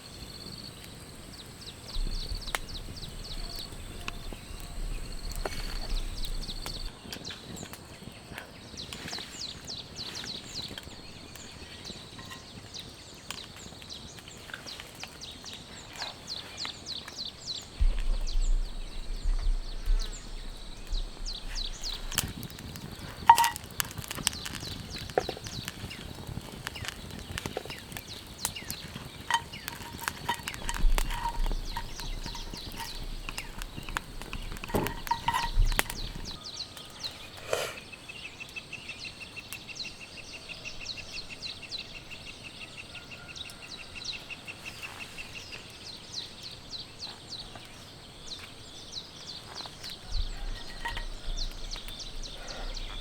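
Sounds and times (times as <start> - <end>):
raindrops tapping on a shelter: 0.0 - 37.6, 49.4 - 53.0
louder drips: 21.8 - 36.4.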